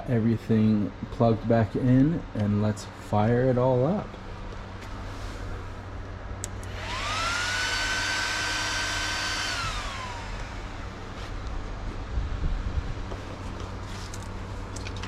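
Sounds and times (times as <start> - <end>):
fans spinning with rising whine: 0.0 - 15.0.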